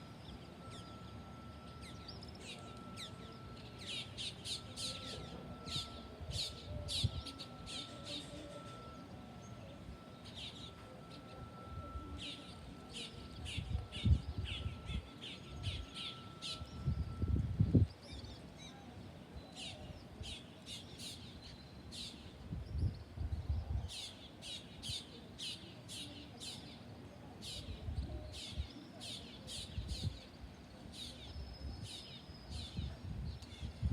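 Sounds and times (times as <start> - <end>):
thin high tone: 0.0 - 19.0.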